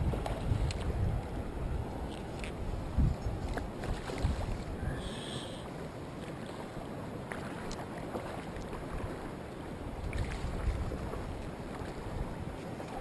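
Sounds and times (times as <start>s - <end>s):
wind buffeting microphone: 0.0s - 5.0s, 8.8s - 13.0s
stream water rushing: 0.0s - 13.0s.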